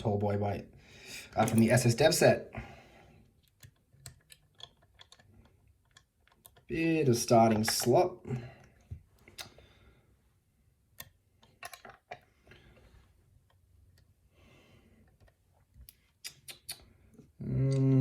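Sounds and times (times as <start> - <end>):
man speaking: 0.0 - 2.6, 6.7 - 8.5
lock picks clicking in a lock: 3.4 - 6.7, 11.0 - 12.1.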